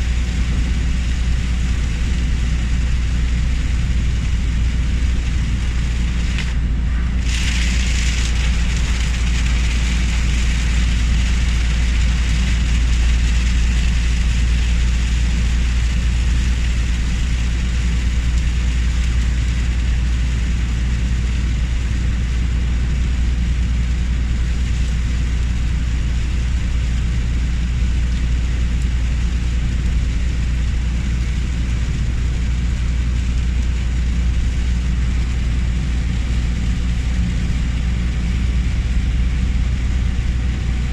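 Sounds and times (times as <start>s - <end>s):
car driving on motorway: 0.0s - 40.9s
heavy rain hissing: 0.9s - 22.7s.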